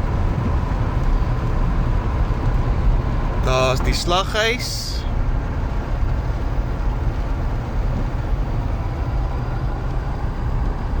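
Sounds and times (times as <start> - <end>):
vehicle rumble and road noise: 0.0 - 11.0.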